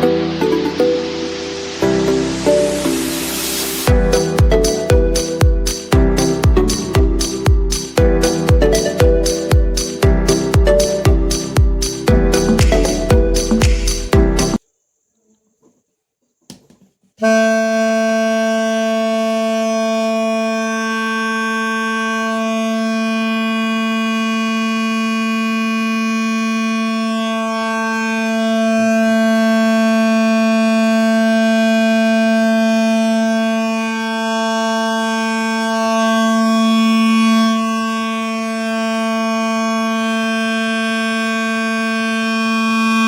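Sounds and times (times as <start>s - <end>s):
toy train horn: 17.2s - 43.0s.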